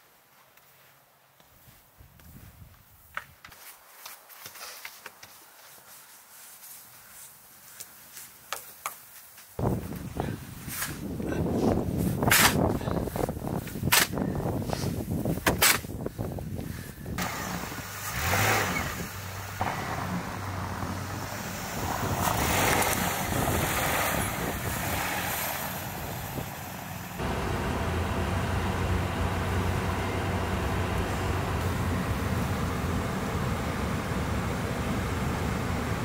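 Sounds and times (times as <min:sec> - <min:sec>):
car engine and road noise: 0:17.1 - 0:36.0.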